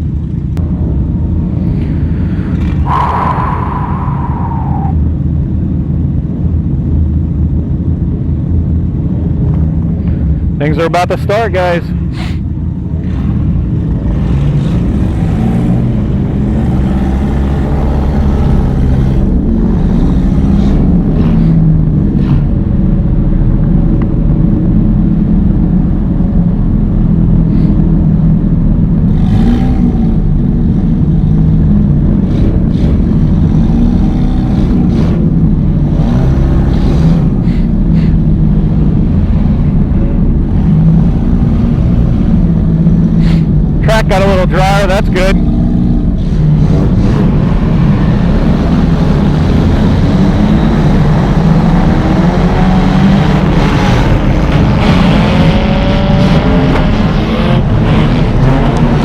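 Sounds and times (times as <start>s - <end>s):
race car engine revving: 10.7s - 23.0s, 27.2s - 59.0s.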